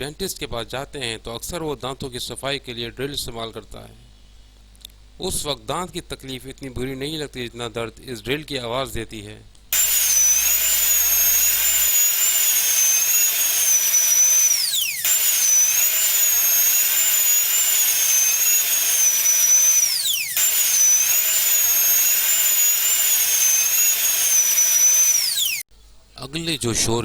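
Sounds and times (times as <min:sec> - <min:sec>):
dental drill whining: 0:09.7 - 0:25.7.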